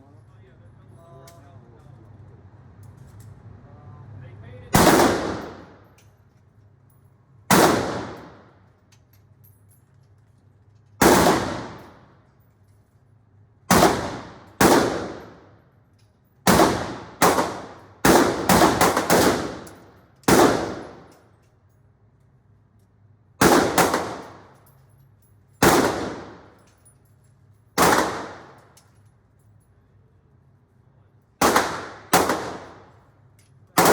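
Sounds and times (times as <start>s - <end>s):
echoing gunshots: 4.8s - 5.8s, 7.5s - 8.6s, 11.0s - 12.1s, 13.7s - 15.5s, 16.5s - 21.1s, 23.4s - 24.6s, 25.6s - 26.6s, 27.8s - 28.7s, 31.4s - 33.0s.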